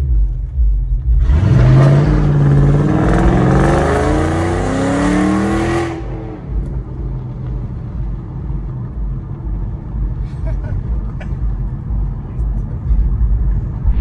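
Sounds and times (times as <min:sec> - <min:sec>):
car exhaust accelerating: 0:00.0 - 0:10.2, 0:13.1 - 0:14.0.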